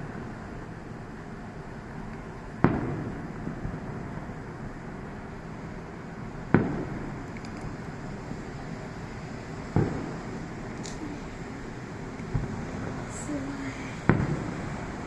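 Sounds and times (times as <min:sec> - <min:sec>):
firework bursts with rumbling echo: 0:00.0 - 0:15.0
steady background hiss: 0:00.0 - 0:15.0
small firework pop: 0:02.1 - 0:03.9, 0:06.5 - 0:07.7, 0:09.8 - 0:10.2.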